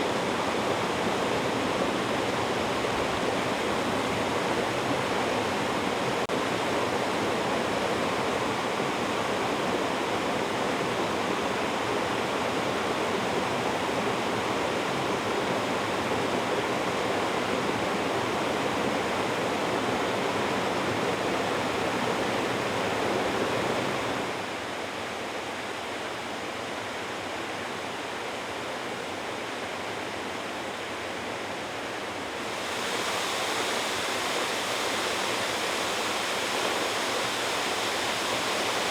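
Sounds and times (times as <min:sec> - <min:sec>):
waterfall rushing: 0:32.4 - 0:38.9.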